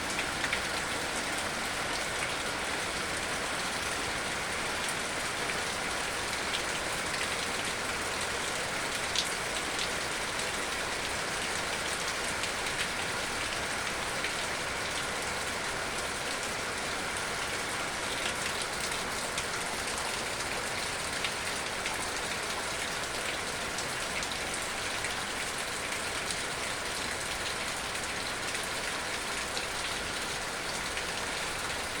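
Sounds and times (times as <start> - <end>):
steady rain hiss: 0.0 - 32.0.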